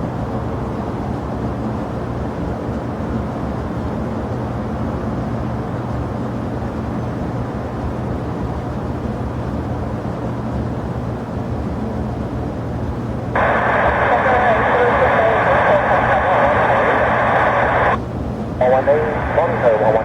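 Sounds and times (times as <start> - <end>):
jet engines rumbling: 13.3 - 18.0, 18.6 - 20.0.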